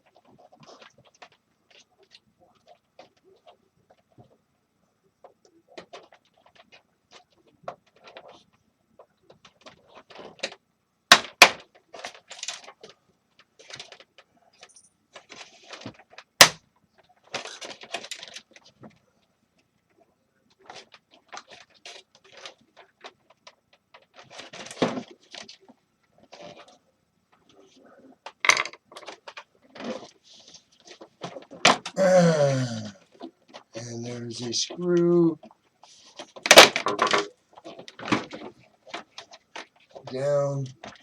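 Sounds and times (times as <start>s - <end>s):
clicks and clatter of parts: 35.9s - 40.1s.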